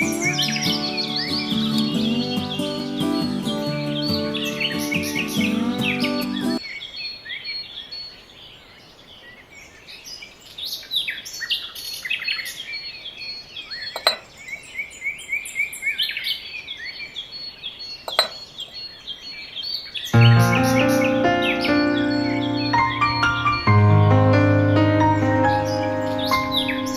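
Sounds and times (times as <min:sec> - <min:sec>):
background music: 0:00.0 - 0:06.6, 0:20.2 - 0:26.9
small birds chirping: 0:00.0 - 0:26.9.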